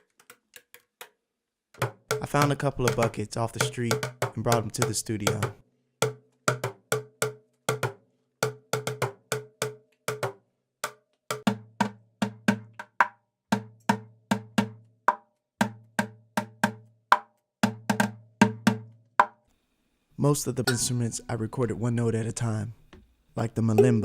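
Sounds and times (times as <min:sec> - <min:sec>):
buckets drummed by hand: 0:01.8 - 0:10.4, 0:23.7 - 0:24.0.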